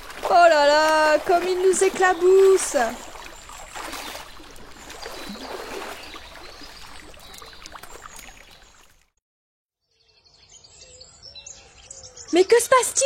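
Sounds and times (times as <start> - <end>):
water splashing from dog swimming: 0.0 - 9.2.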